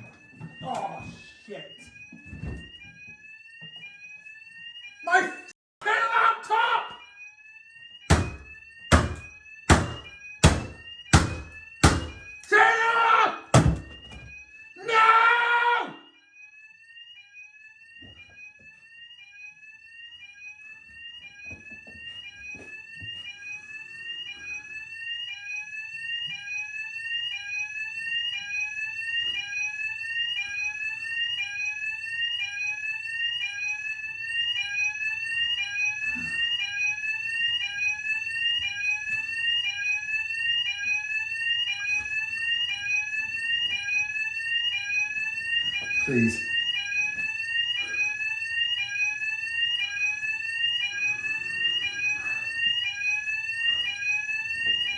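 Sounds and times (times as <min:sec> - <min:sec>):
fire alarm whooping: 0:00.0 - 0:54.9.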